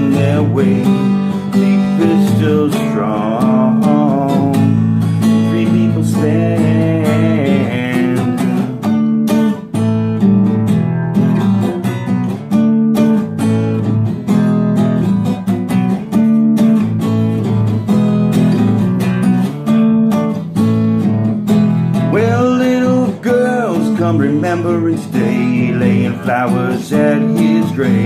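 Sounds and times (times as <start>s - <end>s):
acoustic guitar strumming: 0.0s - 28.0s.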